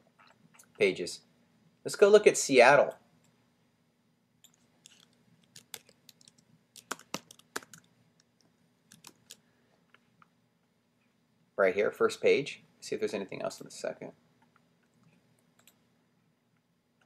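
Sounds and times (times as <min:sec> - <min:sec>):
keyboard typing: 0:04.4 - 0:09.4.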